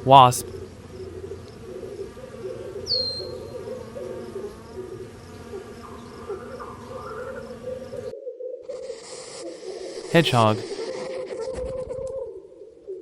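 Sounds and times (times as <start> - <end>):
wasp buzzing: 0.0 - 8.1.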